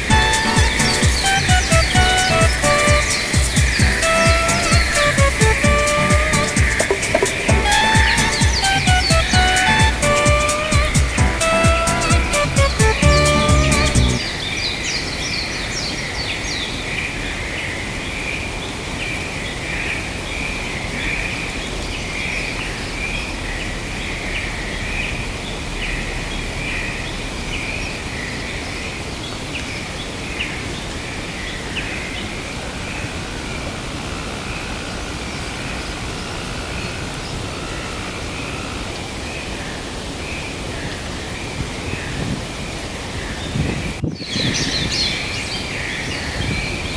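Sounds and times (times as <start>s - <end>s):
birds calling: 0.0s - 15.9s
steady forest hiss: 0.0s - 46.9s.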